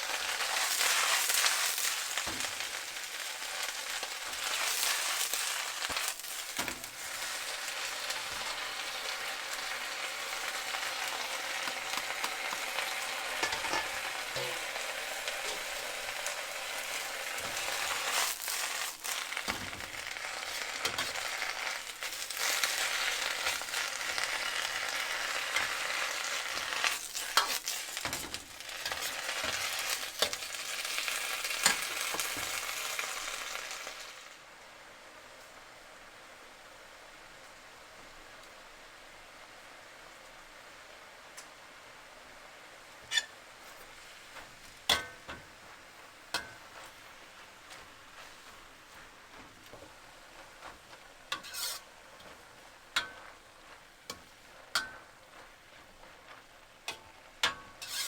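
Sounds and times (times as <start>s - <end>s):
food sizzling in a pan: 0.0s - 58.0s
utensil scraping and knocking pan: 13.3s - 18.2s, 51.3s - 52.4s, 56.9s - 58.0s.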